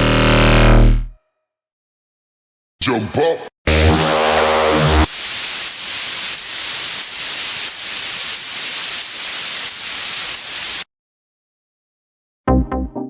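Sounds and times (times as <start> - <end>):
pulsing white noise hiss: 5.1 - 10.8.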